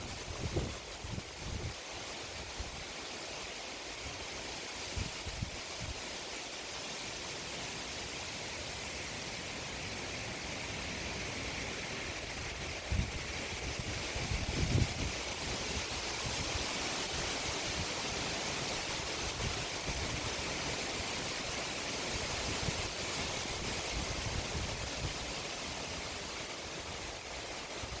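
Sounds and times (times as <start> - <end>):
wind gusts buffeting microphone: 0.0 - 1.8, 11.5 - 21.4, 22.1 - 28.0
wind blowing: 0.0 - 2.9, 10.0 - 28.0.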